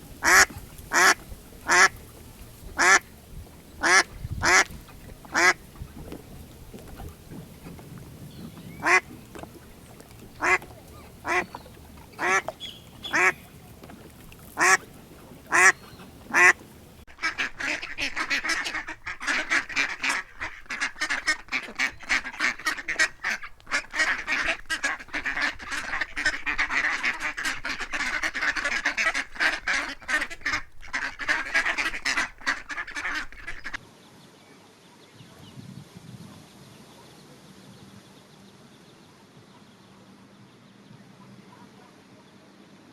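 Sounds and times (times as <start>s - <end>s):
ducks chattering rapid quacks: 0.0s - 33.8s
duck quacking: 0.1s - 3.2s, 3.8s - 33.8s.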